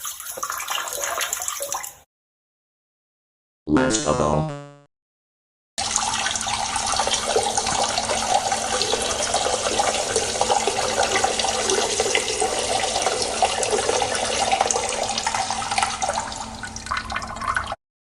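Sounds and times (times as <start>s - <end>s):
liquid splashing into water: 0.0s - 2.0s.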